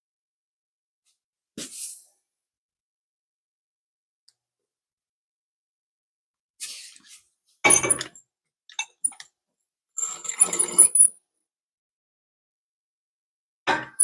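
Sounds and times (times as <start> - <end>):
metal parts clanking and rattling: 10.0 - 11.1.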